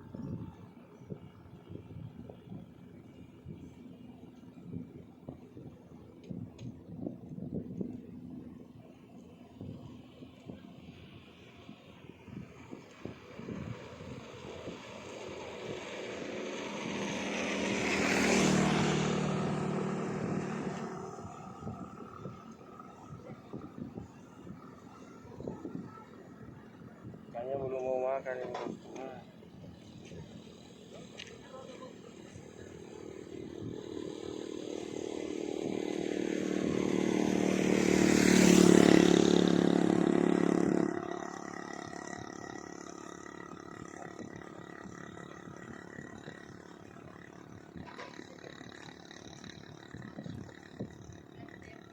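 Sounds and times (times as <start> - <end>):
engine passing by: 12.0 - 51.9.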